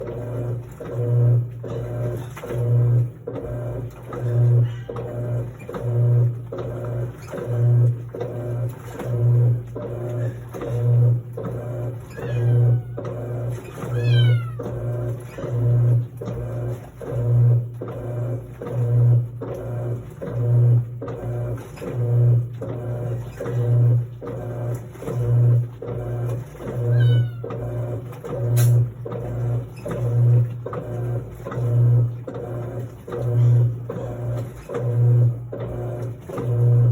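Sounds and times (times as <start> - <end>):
washing machine motor hum: 0.0 - 36.9.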